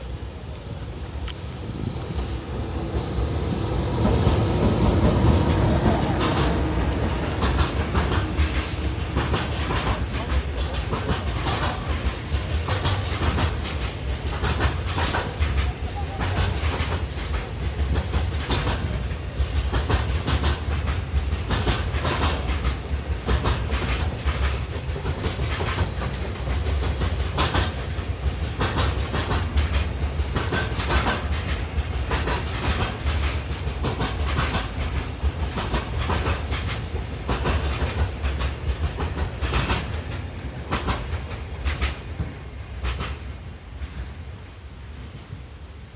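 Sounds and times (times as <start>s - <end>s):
heavy train rumble: 0.0s - 45.9s
train wheels clacking over rails: 0.0s - 45.9s.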